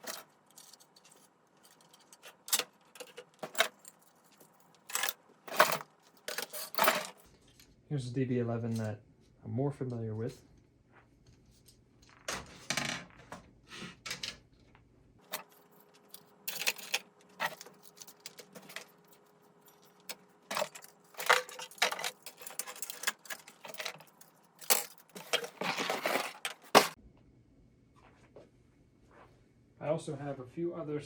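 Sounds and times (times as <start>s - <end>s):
plastic devices rattling in a box: 0.0s - 7.3s, 15.2s - 27.0s.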